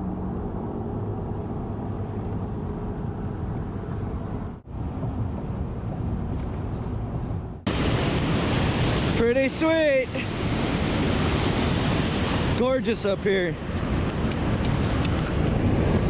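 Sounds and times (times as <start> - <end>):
car engine and road drone: 0.0 - 8.5.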